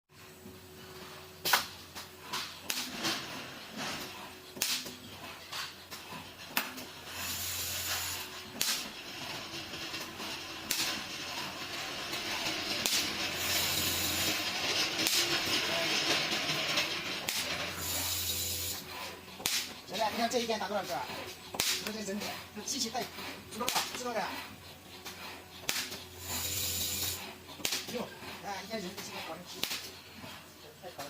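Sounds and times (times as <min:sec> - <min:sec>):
stud welder sharp crack: 0:01.4 - 0:01.7, 0:02.6 - 0:03.0, 0:04.6 - 0:04.9, 0:07.6 - 0:08.9, 0:10.7 - 0:11.0, 0:12.8 - 0:14.4, 0:15.0 - 0:15.3, 0:17.2 - 0:17.5, 0:19.4 - 0:19.7, 0:21.6 - 0:21.9, 0:25.6 - 0:25.9, 0:27.6 - 0:27.9
machine low hum: 0:06.9 - 0:24.5, 0:26.0 - 0:28.4.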